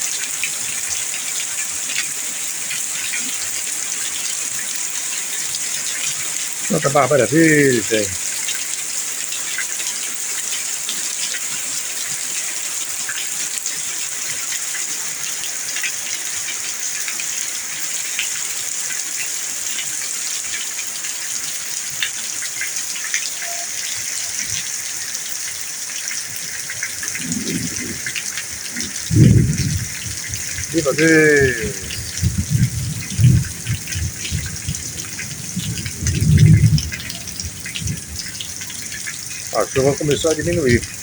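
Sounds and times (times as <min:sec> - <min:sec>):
raindrops pattering on surfaces: 0:00.0 - 0:41.0
heavy rain hissing: 0:02.2 - 0:08.8, 0:23.3 - 0:41.0.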